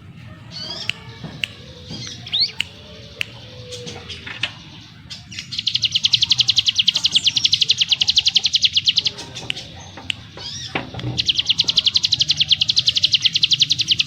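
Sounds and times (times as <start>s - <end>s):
bird singing sharp chirps: 0.5s - 14.0s
fast rattling bird trill: 0.5s - 14.0s.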